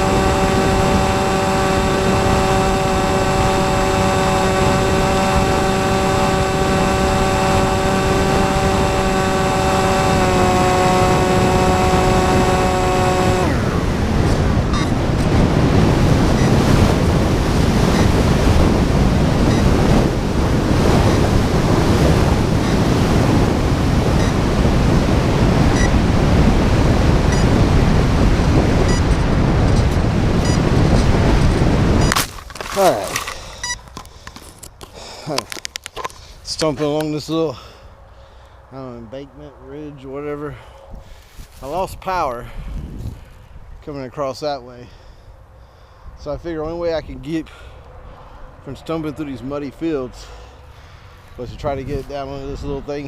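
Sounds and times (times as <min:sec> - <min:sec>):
wind rushing over microphone: 0:00.0 - 0:34.8, 0:38.6 - 0:53.0
electric motor and propeller whining: 0:00.0 - 0:36.4.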